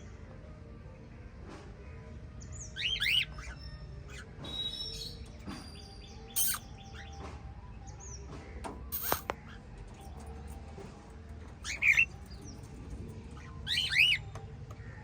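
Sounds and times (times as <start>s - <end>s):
budgerigars chirping: 2.8s - 5.3s, 6.3s - 7.2s, 11.6s - 15.0s.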